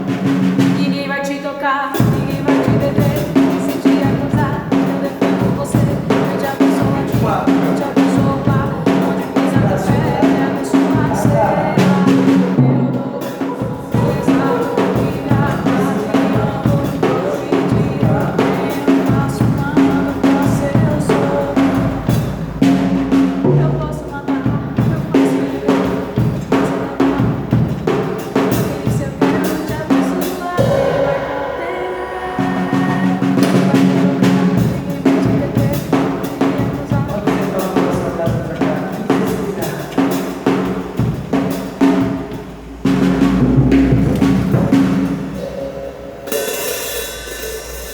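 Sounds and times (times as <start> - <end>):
drum kit beat: 0.0 - 1.2, 2.0 - 47.9
sustained bass notes: 30.6 - 34.2.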